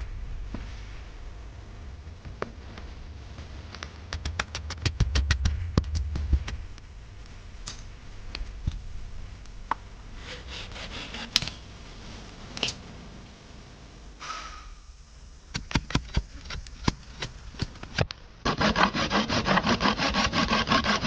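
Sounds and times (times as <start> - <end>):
rapid sharp taps: 3.7 - 6.8
brief scraping: 14.2 - 14.9.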